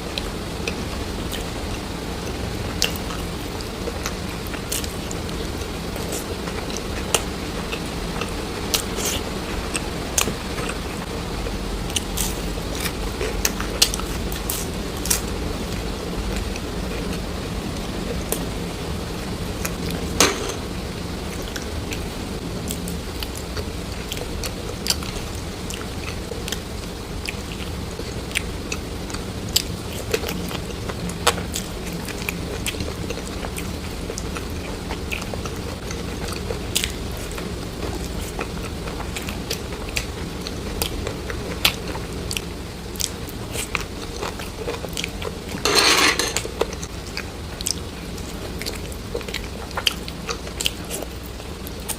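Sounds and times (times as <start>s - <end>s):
steady low hum: 0.0s - 51.9s
chewing and biting: 32.2s - 45.4s.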